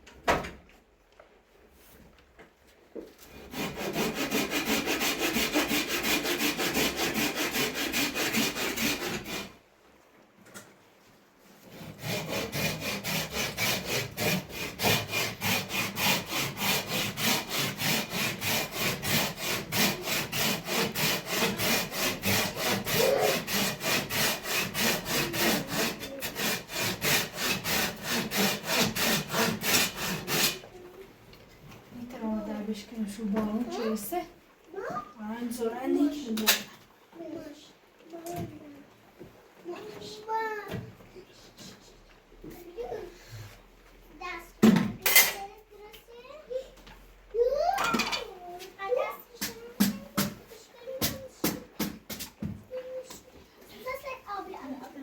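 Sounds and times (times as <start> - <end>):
fast rasping strokes: 3.4 - 9.6, 11.7 - 30.6.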